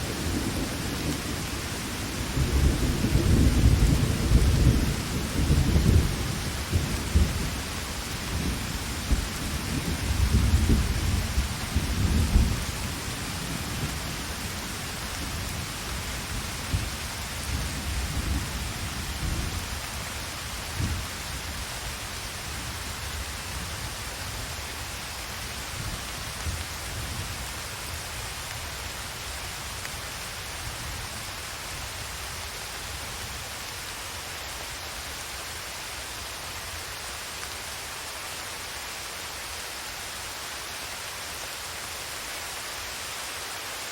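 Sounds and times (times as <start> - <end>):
low rolling thunder: 0.0 - 19.8
heavy rain falling: 0.0 - 43.9.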